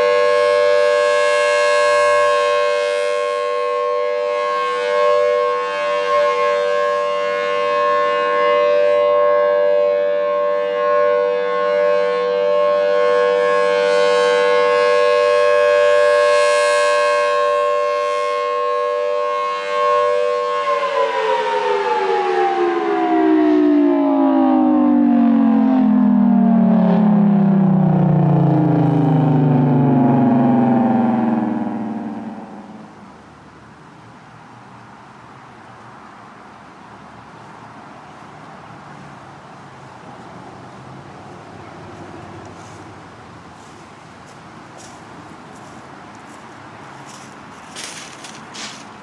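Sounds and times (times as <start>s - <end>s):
mechanical warning siren: 0.0s - 33.3s.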